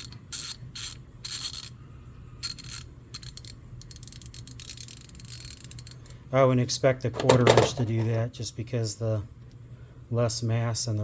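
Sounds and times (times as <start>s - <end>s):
hand ratchet scraping strokes: 2.4s - 6.0s
ratchet fine clicks: 2.4s - 6.1s.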